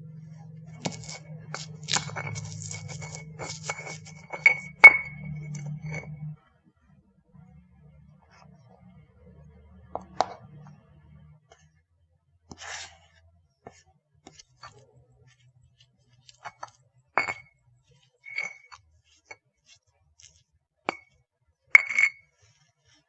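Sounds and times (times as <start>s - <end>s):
utensils clinking against a bowl: 0.8s - 6.3s, 18.3s - 18.8s.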